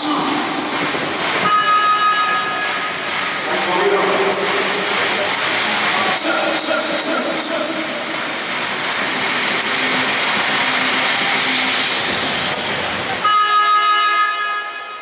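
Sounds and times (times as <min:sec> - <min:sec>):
crowd roaring: 0:00.0 - 0:13.4.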